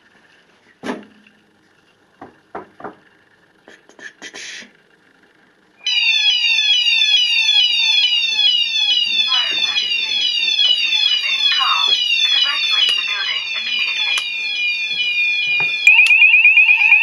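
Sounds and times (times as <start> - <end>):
fire alarm sounders: 5.8 - 17.0.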